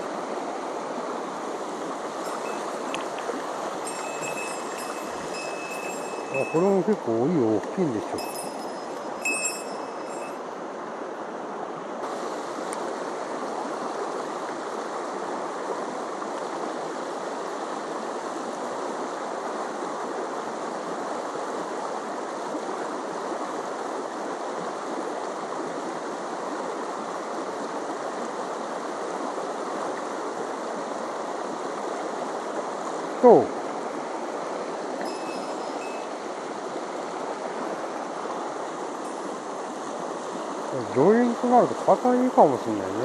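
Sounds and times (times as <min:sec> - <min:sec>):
stream rushing over rocks: 0:00.0 - 0:43.0
faint metallic tinkle: 0:02.2 - 0:10.5, 0:35.0 - 0:36.4, 0:39.0 - 0:39.4.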